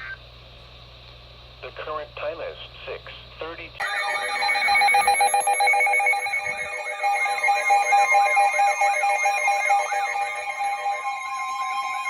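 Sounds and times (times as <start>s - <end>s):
steady electronic alert tones: 3.8s - 12.0s
sweeping tone rising and falling: 3.8s - 12.0s.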